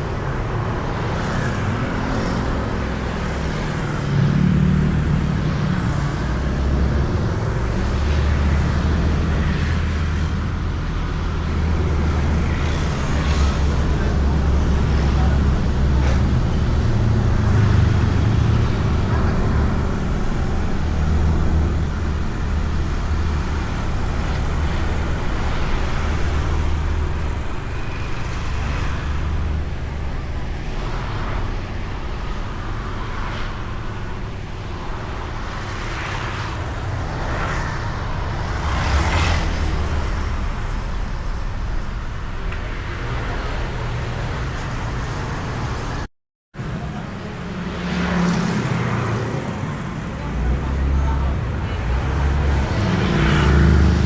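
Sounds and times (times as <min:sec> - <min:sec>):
scooter engine and road rumble: 0:00.0 - 0:54.0
vehicles passing: 0:00.0 - 0:54.0
wind and tyre noise: 0:00.0 - 0:54.0.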